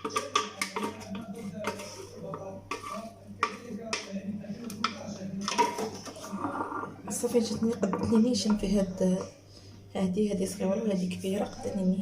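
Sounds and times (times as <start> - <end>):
spoon scraping a container: 0.0 - 4.2.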